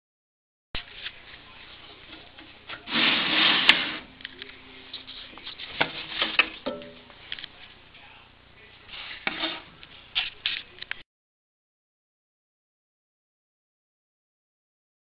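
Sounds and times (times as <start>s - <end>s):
wood scraping: 2.1s - 6.6s, 8.9s - 10.7s.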